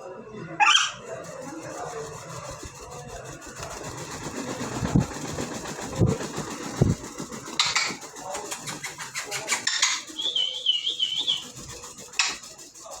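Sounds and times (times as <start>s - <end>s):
parrot scratchy rasps: 0.6s - 13.0s
parrot wavering whistle: 9.8s - 11.6s.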